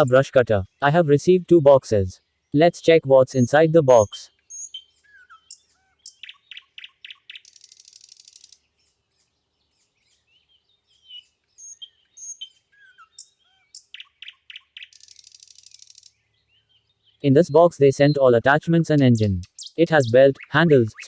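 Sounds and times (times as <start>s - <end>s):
small birds chirping: 0.0s - 21.0s
fast high bird trill: 3.3s - 9.0s, 11.0s - 16.2s, 19.0s - 21.0s.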